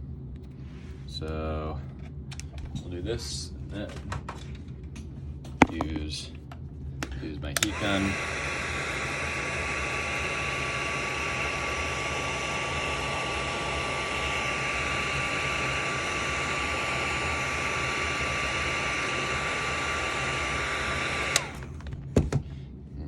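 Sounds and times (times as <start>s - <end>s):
fan motor whine: 0.0s - 23.0s
heat gun air hiss: 7.7s - 21.7s.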